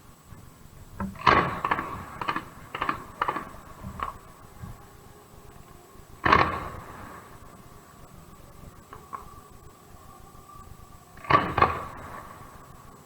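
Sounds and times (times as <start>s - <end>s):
fireworks bursting with sharp bangs: 0.3s - 4.8s, 5.6s - 9.4s, 11.2s - 12.9s.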